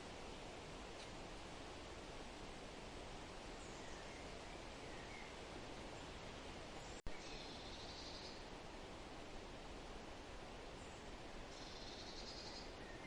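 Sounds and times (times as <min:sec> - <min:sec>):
rustling leaves: 0:00.0 - 0:13.0
faint bird chirps: 0:03.6 - 0:05.4, 0:06.8 - 0:08.5, 0:10.8 - 0:13.0.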